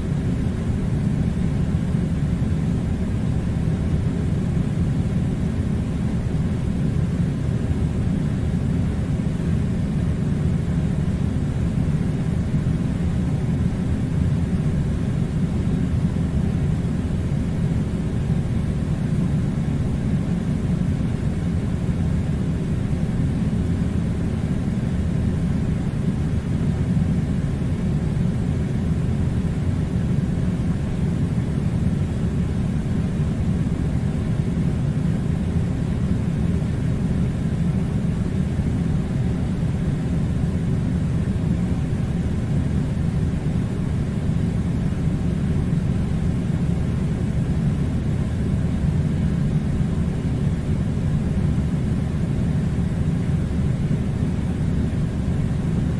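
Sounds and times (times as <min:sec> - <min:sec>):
air conditioner running: 0:00.0 - 0:55.9.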